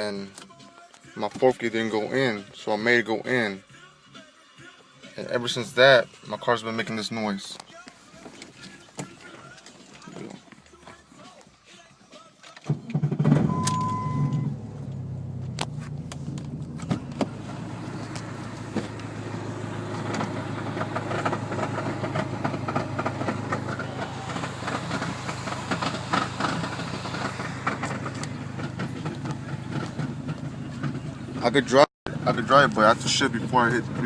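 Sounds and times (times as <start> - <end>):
turbocharged car engine running: 13.1 - 34.0
gearbox grinding noise: 14.3 - 31.7.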